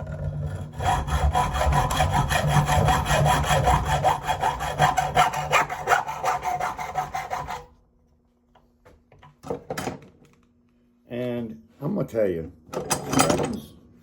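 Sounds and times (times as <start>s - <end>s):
tool rasping on metal: 0.0s - 7.7s.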